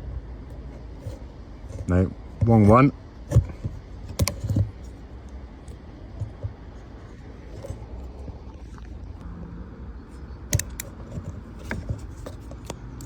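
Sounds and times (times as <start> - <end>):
steady low rumble: 0.0 - 13.0
metal tool clicks: 10.5 - 11.0.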